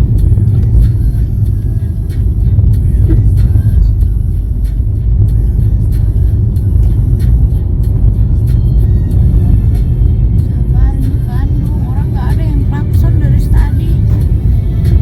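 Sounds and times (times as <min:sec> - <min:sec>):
vehicle driving in traffic: 0:00.0 - 0:15.0.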